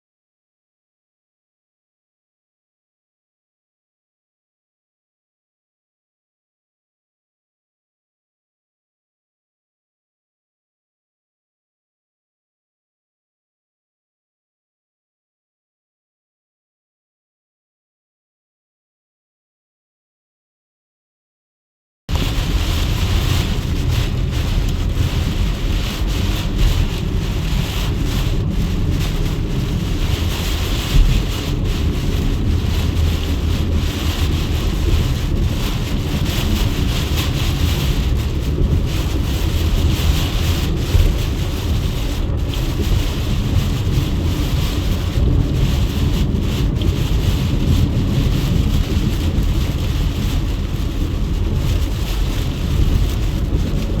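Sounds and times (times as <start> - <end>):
strong wind buffeting microphone: 22.1 - 54.0.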